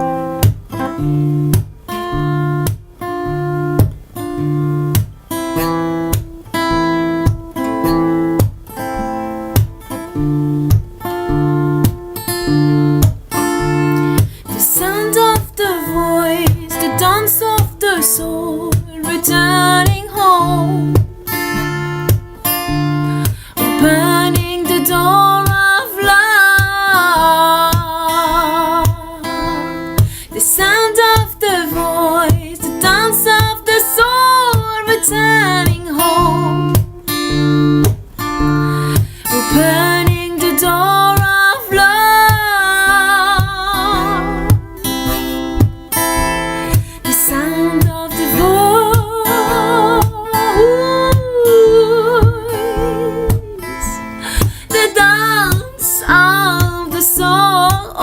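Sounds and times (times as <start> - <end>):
acoustic guitar: 0.0 - 58.0
person singing: 14.5 - 21.0, 23.6 - 36.8, 39.3 - 45.5, 46.6 - 58.0.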